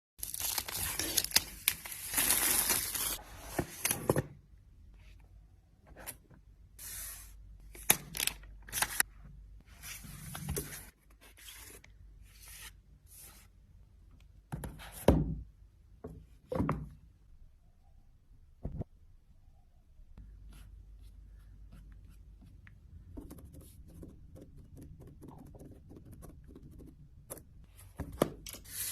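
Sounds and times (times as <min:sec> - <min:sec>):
packaging tearing: 0:00.2 - 0:03.2.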